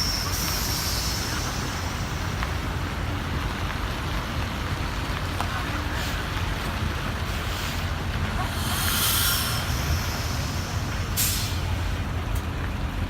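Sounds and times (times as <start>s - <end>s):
large engines rumbling: 0.0s - 13.0s
even noise: 7.4s - 12.2s.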